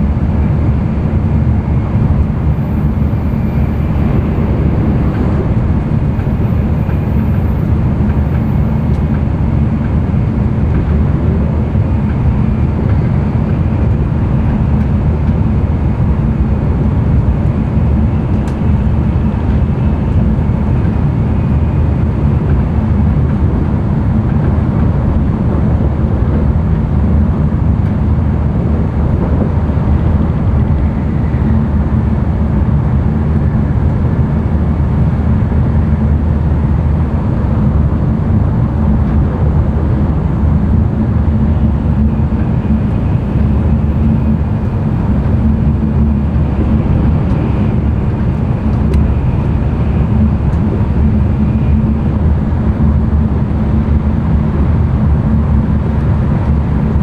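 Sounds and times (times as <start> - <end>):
train wheels rumbling on rails: 0.0 - 57.0
faint high whine: 1.5 - 9.4.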